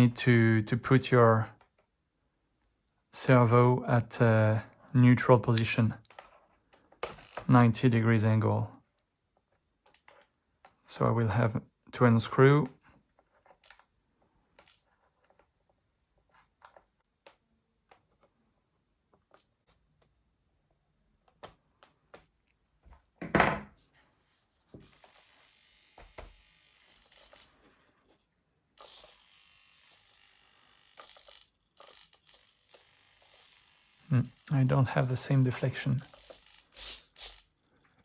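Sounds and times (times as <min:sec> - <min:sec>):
small electric motor buzzing: 0:24.8 - 0:27.8, 0:28.8 - 0:34.5, 0:36.0 - 0:37.6.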